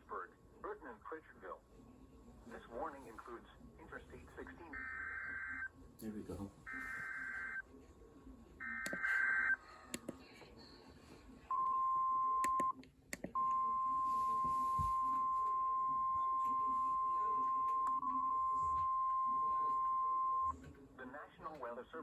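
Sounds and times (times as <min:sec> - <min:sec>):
steady high alarm tone: 0:04.7 - 0:05.7, 0:06.7 - 0:07.6, 0:08.6 - 0:09.6, 0:13.6 - 0:20.6
clicks: 0:08.8 - 0:09.2, 0:12.4 - 0:13.4.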